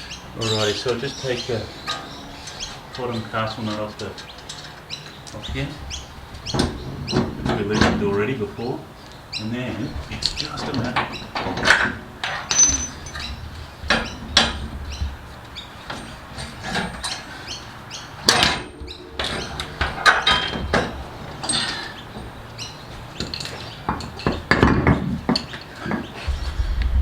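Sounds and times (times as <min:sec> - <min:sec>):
hand tools clinking on metal: 0:10.2 - 0:14.6, 0:22.9 - 0:26.2.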